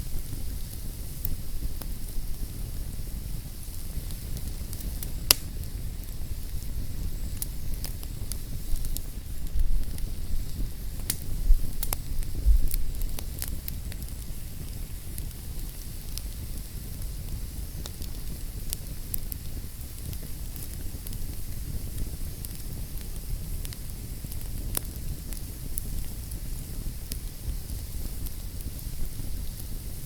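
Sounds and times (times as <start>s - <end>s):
fire crackling and popping: 0.0s - 30.0s
low rumble of flames: 0.0s - 30.0s.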